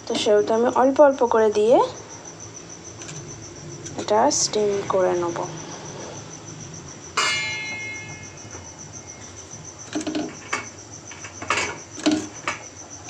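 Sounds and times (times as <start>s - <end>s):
crickets chirping: 0.0s - 13.0s
metal utensil clinking: 7.2s - 8.3s.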